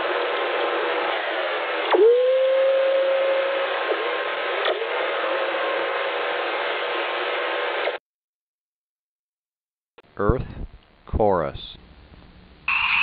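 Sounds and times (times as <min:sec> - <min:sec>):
falling radio whistles: 0:01.9 - 0:04.1, 0:12.7 - 0:13.0
radio hiss: 0:12.7 - 0:13.0.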